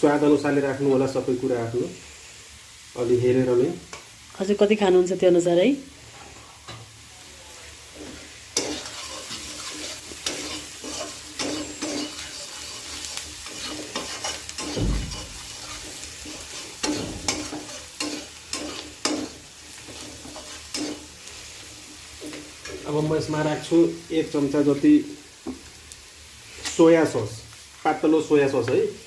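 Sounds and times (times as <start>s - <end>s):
onions sizzling in hot oil: 0.0s - 29.0s
spoon stirring and scraping pan: 5.9s - 24.0s.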